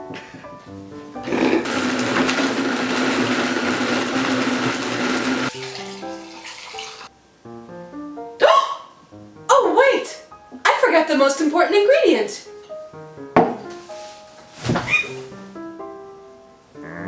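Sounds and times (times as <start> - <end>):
light background music: 0.0 - 1.7, 5.5 - 17.0
electric blender running: 1.2 - 5.8.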